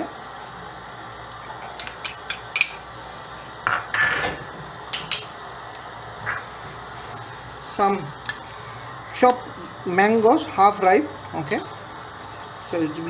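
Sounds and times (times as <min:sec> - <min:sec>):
utensils and dishes clinking: 0:01.1 - 0:02.9, 0:08.2 - 0:08.5, 0:09.1 - 0:09.5, 0:11.4 - 0:11.8.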